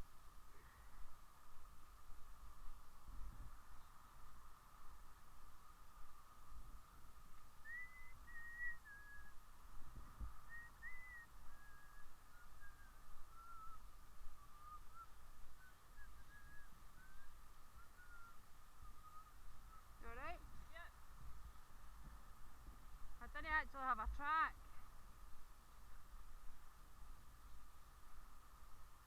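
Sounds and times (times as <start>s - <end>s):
faint steady hum: 0.0s - 29.0s
person whistling softly: 6.9s - 9.4s, 10.4s - 19.8s.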